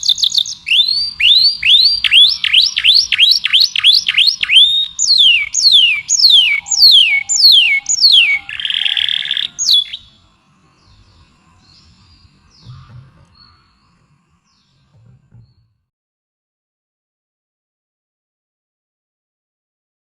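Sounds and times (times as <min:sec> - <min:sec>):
songbird whistling: 0:00.0 - 0:10.2
bird buzzing trill: 0:00.0 - 0:15.8.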